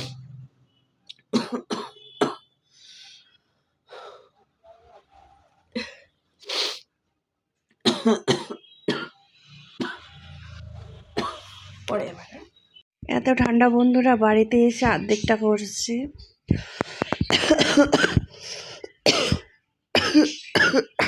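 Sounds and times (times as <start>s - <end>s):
woman coughing: 1.3s - 2.5s, 7.8s - 9.2s, 17.3s - 21.0s.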